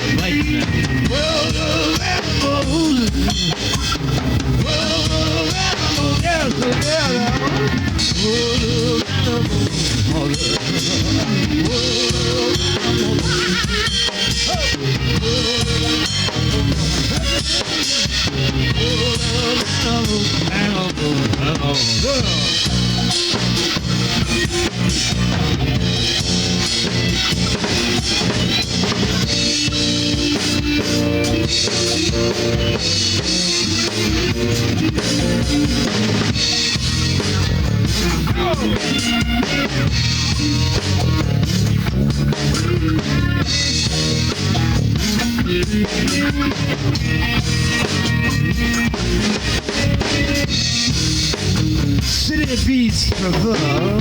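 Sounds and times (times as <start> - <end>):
bass guitar: 0.0 - 54.0
drum kit: 0.0 - 54.0
electric guitars: 0.0 - 54.0.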